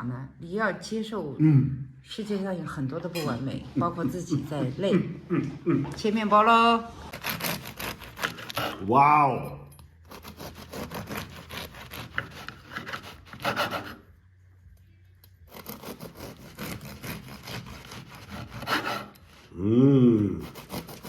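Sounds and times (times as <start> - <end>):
bread knife sawing through bread: 7.1 - 8.9, 10.1 - 14.1, 15.5 - 19.5, 20.3 - 21.0
person exclaiming: 19.6 - 20.4.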